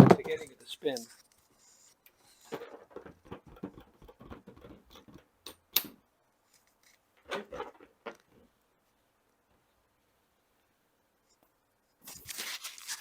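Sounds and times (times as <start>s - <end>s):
balloon rubbing rustles and clicks: 2.4s - 5.3s.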